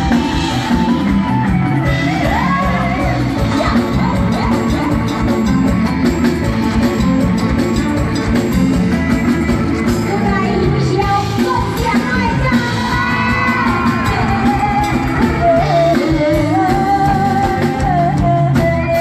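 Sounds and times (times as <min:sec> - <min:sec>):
live band music: 0:00.0 - 0:19.0
steady drum beat: 0:00.0 - 0:19.0
person singing: 0:01.8 - 0:05.8, 0:10.0 - 0:19.0.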